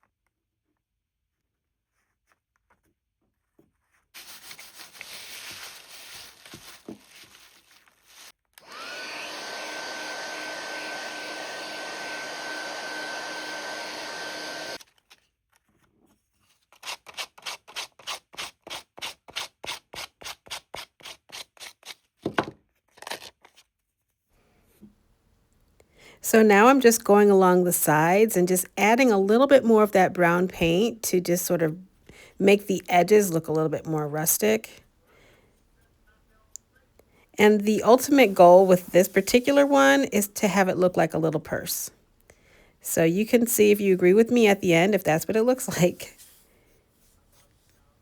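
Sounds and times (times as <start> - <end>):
rubbing strokes: 3.7 - 8.3
hair dryer blowing: 8.6 - 14.8.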